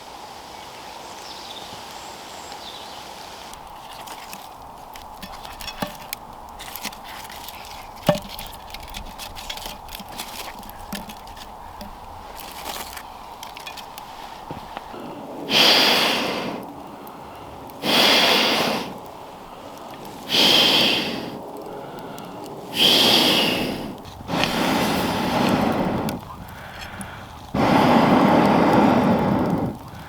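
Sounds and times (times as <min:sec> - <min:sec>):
person blowing hard: 0:17.8 - 0:19.0, 0:20.3 - 0:21.4, 0:22.7 - 0:26.2, 0:27.6 - 0:29.8.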